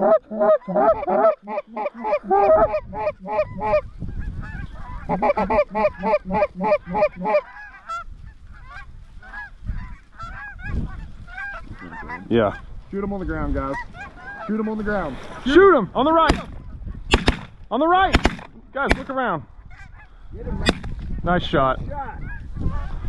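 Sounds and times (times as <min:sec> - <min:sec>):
geese honking and clucking: 0:00.0 - 0:15.6, 0:19.0 - 0:21.2, 0:22.0 - 0:23.0.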